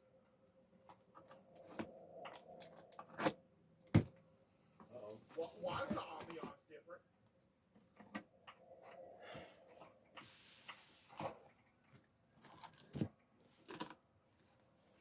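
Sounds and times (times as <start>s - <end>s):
cardboard packaging rustling: 11.0s - 14.0s.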